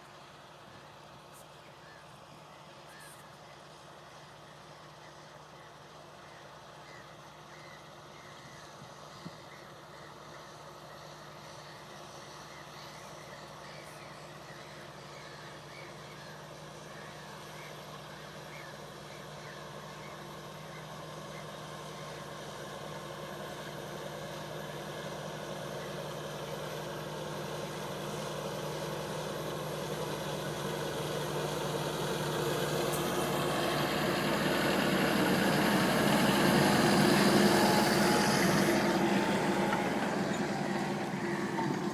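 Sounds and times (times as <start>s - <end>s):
tractor engine running: 14.8s - 41.9s.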